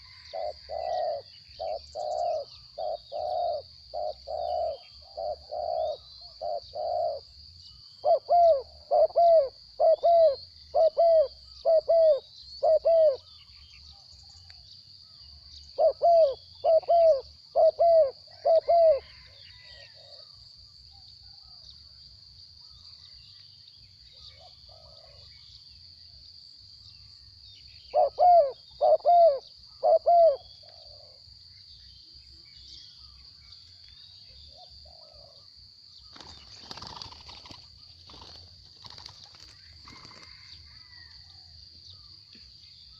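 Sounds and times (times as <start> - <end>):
doves cooing: 0.0 - 7.3, 8.0 - 13.2, 15.8 - 20.3, 24.3 - 25.3, 27.9 - 31.2, 36.2 - 41.4.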